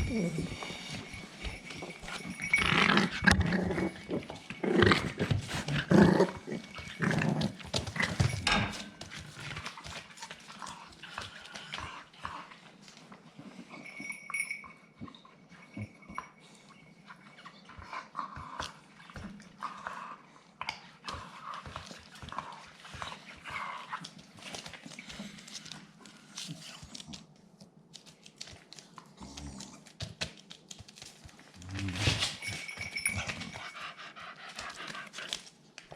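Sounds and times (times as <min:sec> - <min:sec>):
puppies making dog sounds: 0:00.0 - 0:08.9.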